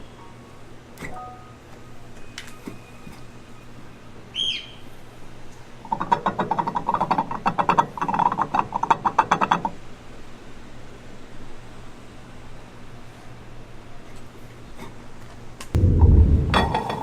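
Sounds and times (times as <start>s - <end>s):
bird chirp: 4.3s - 4.9s.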